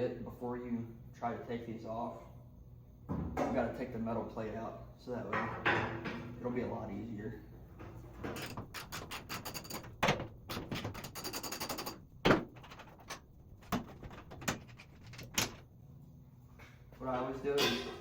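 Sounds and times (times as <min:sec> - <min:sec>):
sharp metal knocks: 0:17.6 - 0:18.0.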